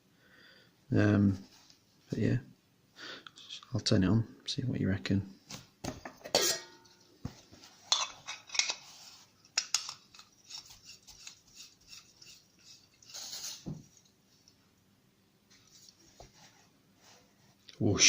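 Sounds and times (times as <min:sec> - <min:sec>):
metal stove clicks and clinks: 0:06.2 - 0:06.9.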